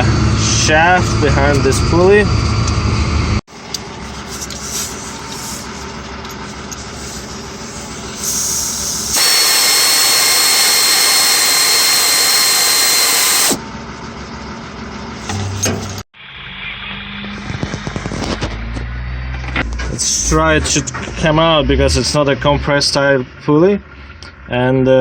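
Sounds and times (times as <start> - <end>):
aerosol can spraying hiss: 8.2 - 13.4.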